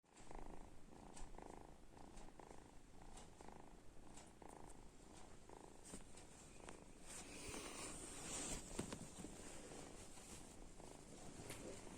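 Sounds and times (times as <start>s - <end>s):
kitten snoring: 0.2s - 5.8s, 6.7s - 8.2s.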